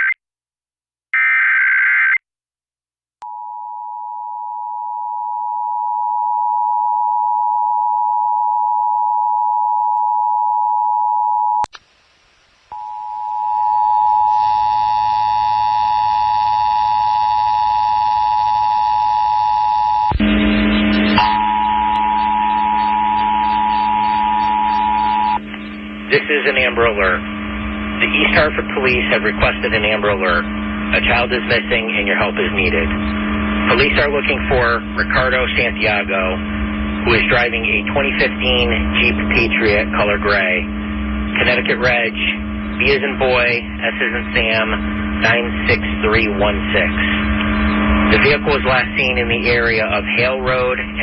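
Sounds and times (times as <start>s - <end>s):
loud steady dual tone: 3.2s - 51.0s
low buzz: 11.8s - 51.0s.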